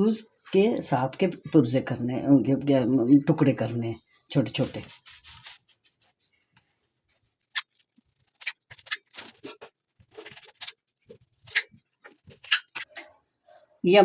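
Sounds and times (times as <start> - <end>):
knife scraping through bread: 4.6 - 6.2, 7.1 - 13.0.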